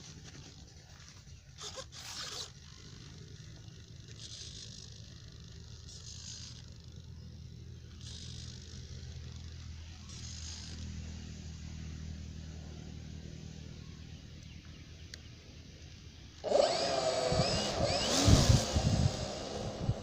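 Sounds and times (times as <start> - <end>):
electric motor whining: 16.4 - 20.0.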